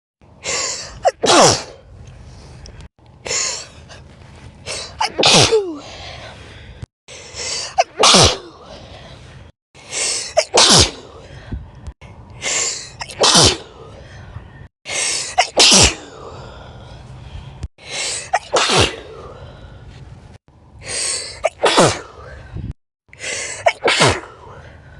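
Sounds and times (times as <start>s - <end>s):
person sneezing: 0.5s - 1.8s, 4.8s - 5.9s, 7.6s - 8.6s, 10.0s - 11.1s, 13.0s - 13.7s, 15.3s - 16.1s, 18.2s - 19.1s, 21.3s - 22.1s, 23.5s - 24.3s.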